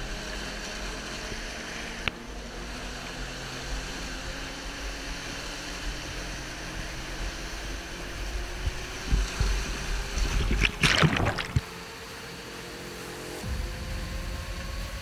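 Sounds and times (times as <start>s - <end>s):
creek water rushing: 6.1s - 12.0s.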